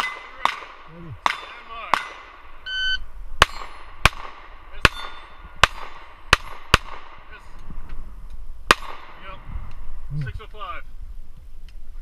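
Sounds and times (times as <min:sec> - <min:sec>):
pistol shots: 0:00.0 - 0:02.4, 0:03.4 - 0:07.3, 0:08.7 - 0:09.3
shot timer beep: 0:02.7 - 0:03.0.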